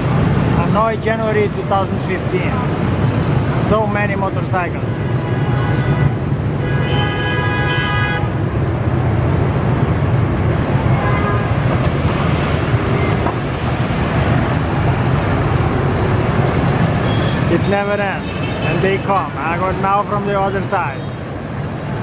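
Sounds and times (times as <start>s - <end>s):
motorcycle traffic passing: 0.0s - 22.0s
horn tooting: 5.2s - 8.4s, 17.0s - 19.2s.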